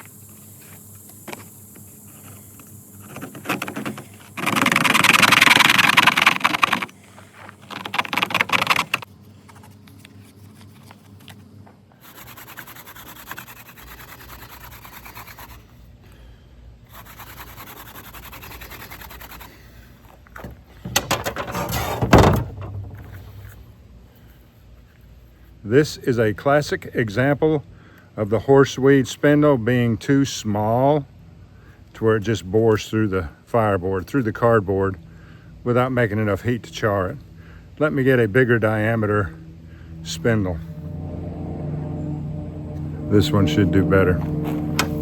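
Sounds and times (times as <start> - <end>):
spindle scraping on cardboard: 21.3 - 22.2.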